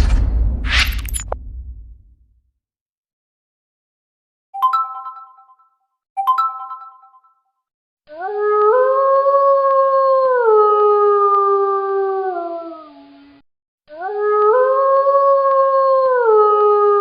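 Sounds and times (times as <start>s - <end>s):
bell-like chime notes: 4.6s - 7.4s
wolf howl: 8.4s - 13.0s, 14.0s - 17.0s.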